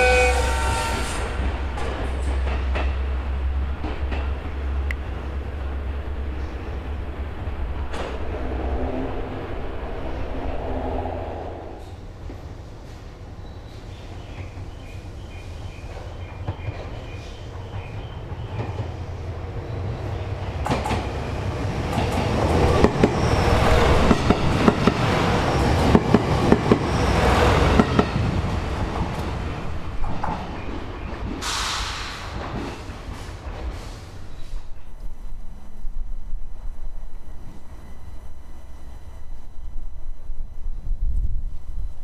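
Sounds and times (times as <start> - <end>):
train rumble: 0.0 - 42.0
brief high hiss: 31.4 - 32.4.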